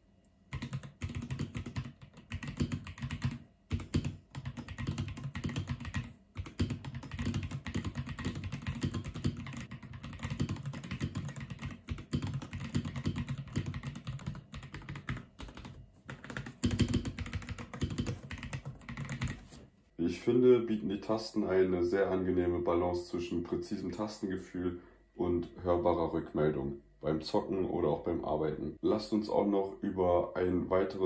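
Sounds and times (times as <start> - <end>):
mechanical keyboard typing: 0.5 - 19.5.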